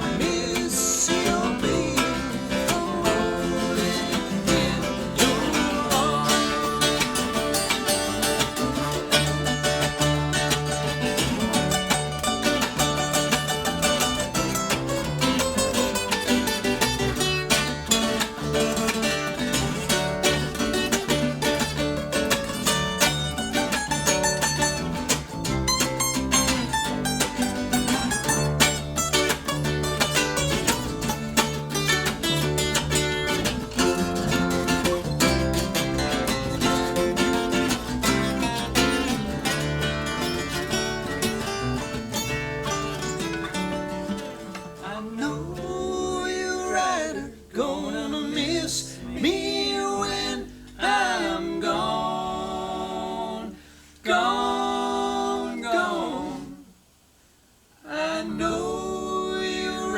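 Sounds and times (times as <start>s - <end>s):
voices singing in harmony: 0.0s - 22.0s, 44.7s - 56.8s, 57.8s - 59.9s
acoustic string band playing: 0.0s - 44.6s.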